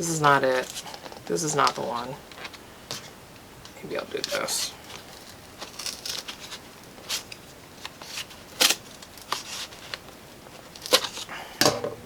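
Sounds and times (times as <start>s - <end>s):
cardboard box scraping and crackling: 4.2s - 10.0s.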